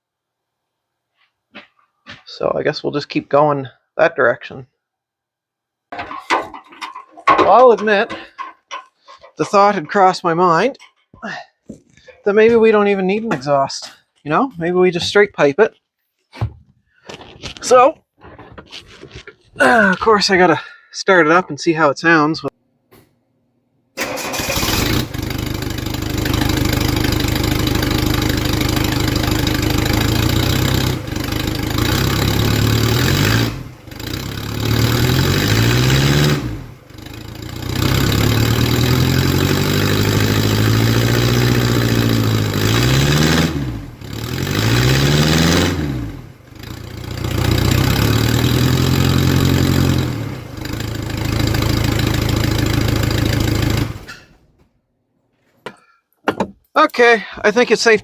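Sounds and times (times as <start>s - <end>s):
diesel engine revving: 24.0s - 54.2s.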